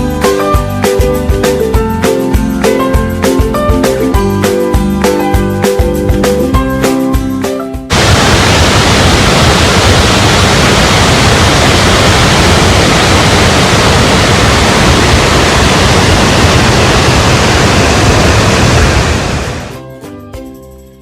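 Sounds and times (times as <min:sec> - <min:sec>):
waterfall rushing: 0:07.9 - 0:19.8.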